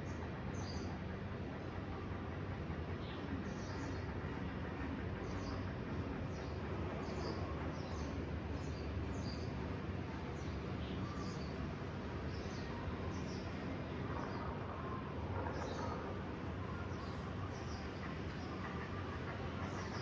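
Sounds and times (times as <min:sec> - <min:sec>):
small birds chirping: 0:10.2 - 0:11.6.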